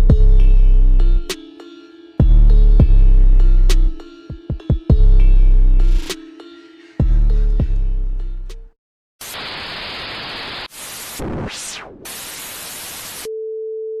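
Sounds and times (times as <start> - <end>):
electronic music with heavy bass: 0.0 - 1.4, 2.2 - 6.2, 7.0 - 8.6
static white noise burst: 9.2 - 13.3.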